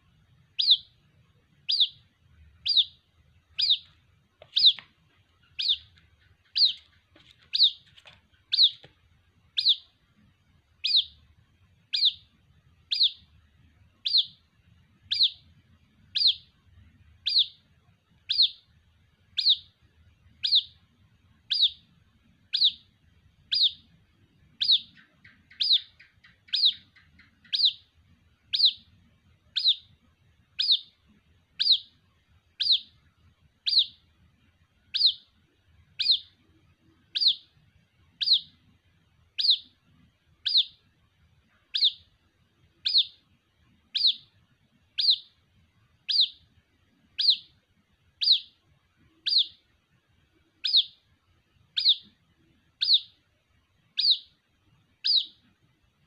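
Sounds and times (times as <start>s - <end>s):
chick peeping: 0.5s - 8.9s, 9.5s - 10.0s, 10.8s - 11.2s, 11.9s - 13.3s, 14.0s - 15.5s, 16.1s - 16.6s, 17.2s - 17.7s, 18.3s - 18.7s, 19.3s - 19.8s, 20.4s - 20.8s, 21.4s - 22.9s, 23.5s - 23.9s, 24.5s - 30.0s, 30.6s - 32.0s, 32.6s - 33.0s, 33.6s - 34.1s, 34.9s - 36.4s, 37.0s - 37.6s, 38.2s - 38.6s, 39.4s - 39.8s, 40.4s - 40.8s, 41.6s - 42.1s, 42.8s - 43.2s, 43.9s - 44.3s, 45.0s - 45.4s, 46.0s - 46.5s, 47.2s - 47.6s, 48.2s - 49.7s, 50.6s - 51.1s, 51.7s - 52.2s, 52.8s - 53.2s, 54.0s - 54.4s, 55.0s - 55.4s.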